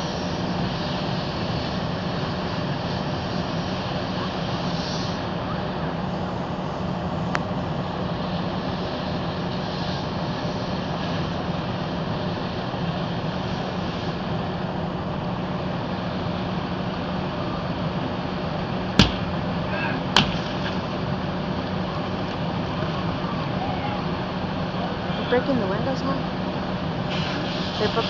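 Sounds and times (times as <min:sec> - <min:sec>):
steady low drone: 0:00.0 - 0:28.0
sharp cracks: 0:19.0 - 0:19.5, 0:20.2 - 0:20.9.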